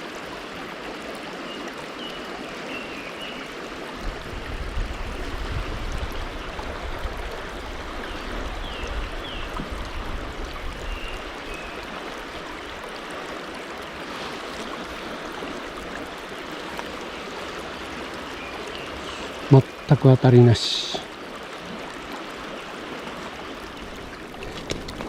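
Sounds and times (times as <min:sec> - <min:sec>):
river water rushing: 0:00.0 - 0:25.0.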